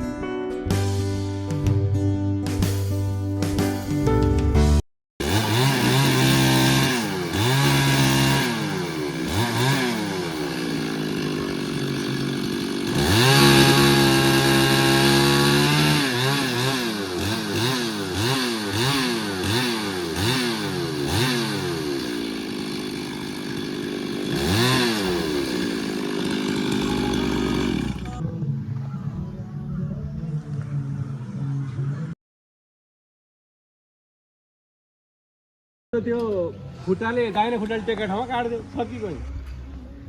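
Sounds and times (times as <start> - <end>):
chainsaw revving: 5.2 - 28.2.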